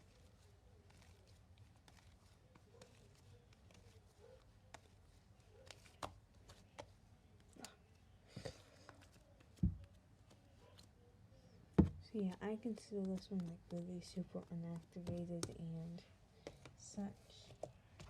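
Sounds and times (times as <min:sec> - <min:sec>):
dull thump: 0:11.8 - 0:12.0.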